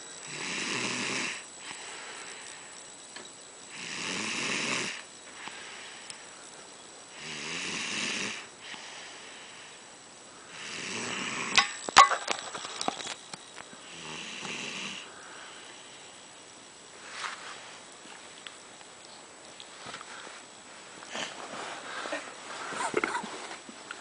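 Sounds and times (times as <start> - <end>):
man snoring: 0.2 - 1.8, 3.7 - 6.0, 7.1 - 9.2, 10.5 - 11.6, 13.8 - 15.1.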